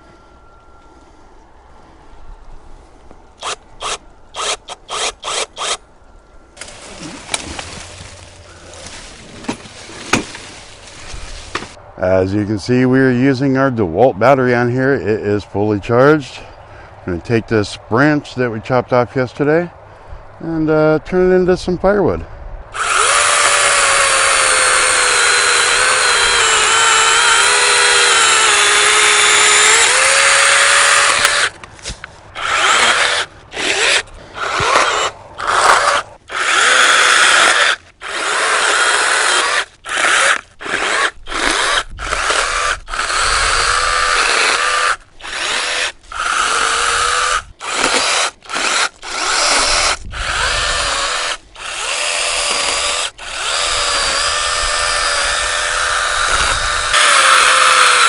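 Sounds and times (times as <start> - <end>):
chainsaw cutting branch: 6.6 - 11.8, 22.8 - 58.0.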